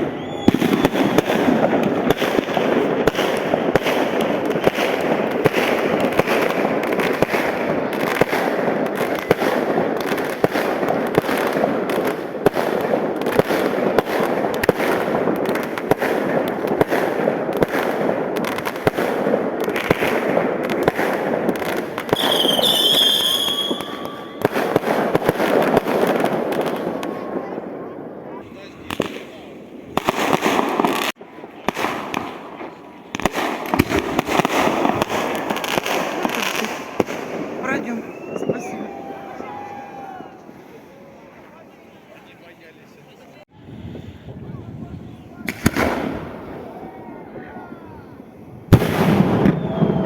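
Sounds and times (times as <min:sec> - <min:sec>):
firework whistle: 0:00.0 - 0:04.1, 0:22.0 - 0:24.6, 0:37.7 - 0:40.7, 0:48.7 - 0:50.0
fireworks crackling and banging: 0:00.0 - 0:50.0.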